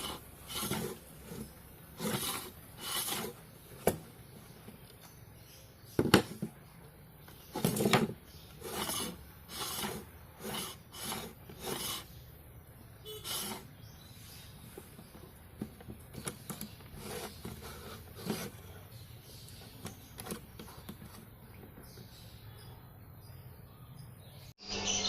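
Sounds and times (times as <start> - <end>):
rasping strokes on wood: 0.0 - 3.4, 7.6 - 12.2, 13.2 - 13.7, 17.0 - 18.6.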